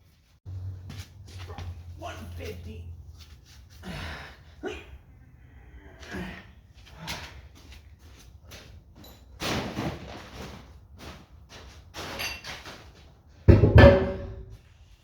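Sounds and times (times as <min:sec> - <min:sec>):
metal clattering and knocking: 0:13.5 - 0:14.6
heavy metal clank with ring: 0:13.6 - 0:14.6.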